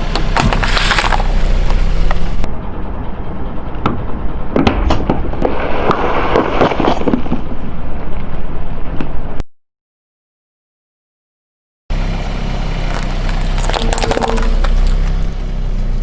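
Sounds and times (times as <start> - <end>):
tyre crushing brittle objects: 0.0 - 2.2, 12.8 - 15.3
car running: 0.0 - 5.6, 11.9 - 16.0.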